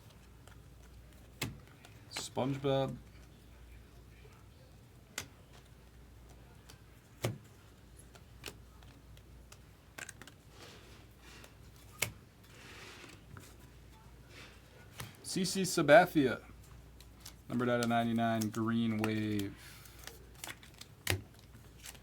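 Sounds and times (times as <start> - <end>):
cards clicking and tapping: 0.1 - 3.4, 5.1 - 10.4, 16.9 - 22.0
card stock rustling: 16.9 - 22.0.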